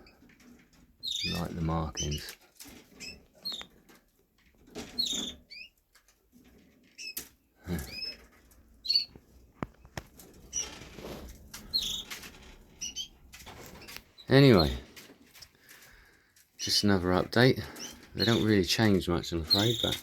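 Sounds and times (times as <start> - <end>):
canaries chirping: 0.0 - 4.0, 4.6 - 20.0
birds scratching in cages: 0.0 - 20.0
wings fluttering: 7.7 - 16.1.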